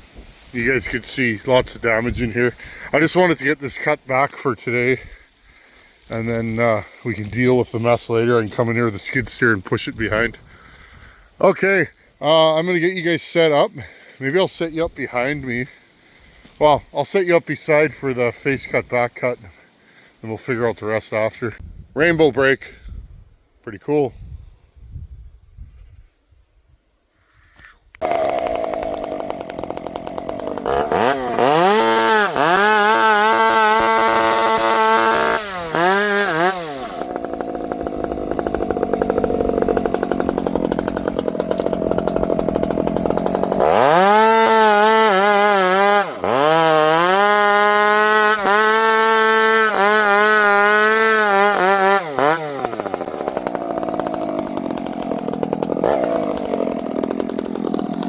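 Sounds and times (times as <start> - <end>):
chainsaw revving and cutting: 0.5 - 3.9, 28.0 - 58.0
chainsaw rough idle: 0.5 - 16.7, 28.0 - 58.0.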